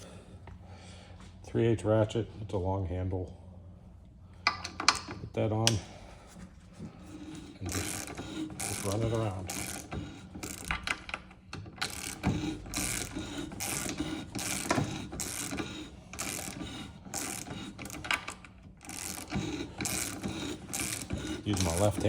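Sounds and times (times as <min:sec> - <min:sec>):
metal being cut: 0:07.1 - 0:10.9, 0:11.8 - 0:18.2, 0:18.8 - 0:22.0
ratchet pawl clicking: 0:07.1 - 0:22.0.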